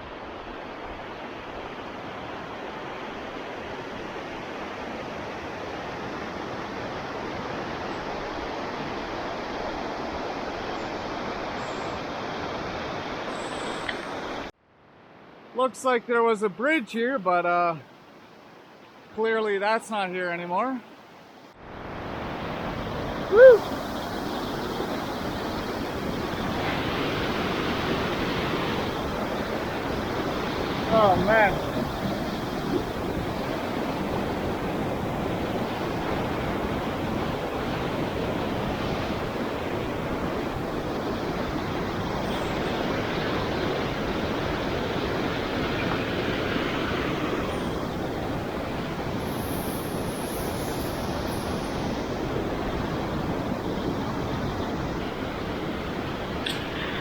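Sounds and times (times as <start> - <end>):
rushing creek water: 0.0 - 57.0.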